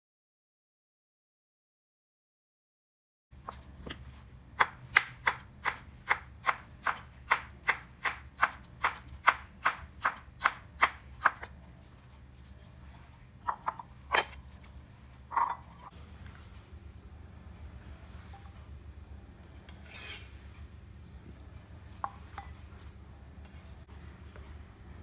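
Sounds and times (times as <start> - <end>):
knife chopping on cutting board: 3.5 - 11.5.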